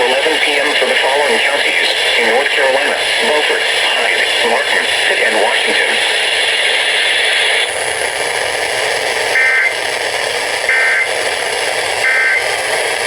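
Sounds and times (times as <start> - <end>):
radio static hiss: 0.0 - 13.0
data tone bursts: 9.4 - 9.8, 10.7 - 11.2, 12.0 - 12.5.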